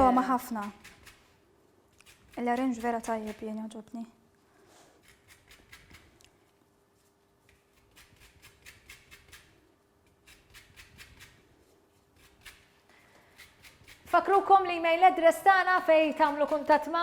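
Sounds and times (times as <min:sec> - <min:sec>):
grater scraping lemon peel: 0:00.0 - 0:03.6, 0:05.0 - 0:06.3, 0:07.4 - 0:14.6, 0:15.6 - 0:17.0.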